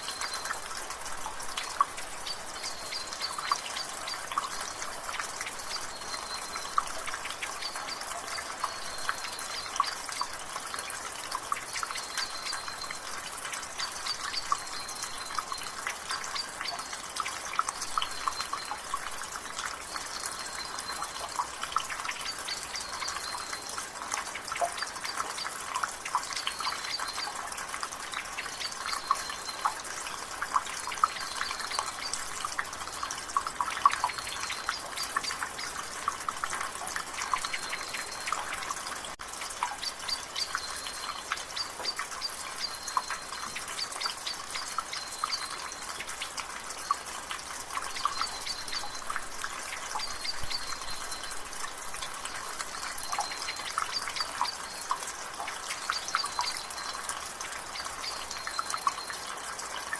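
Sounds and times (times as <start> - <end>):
rain: 0.0 - 59.9
water dripping from a rain gutter: 0.0 - 59.9
bird chirping: 39.7 - 45.9.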